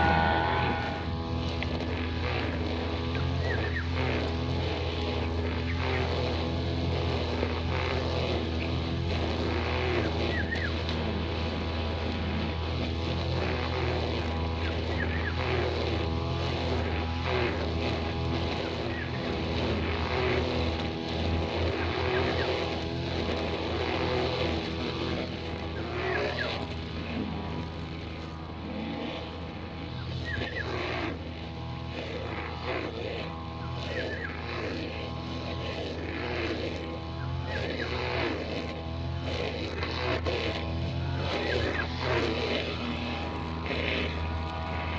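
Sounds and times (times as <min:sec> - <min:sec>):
brushcutter engine running: 0:00.0 - 0:44.9.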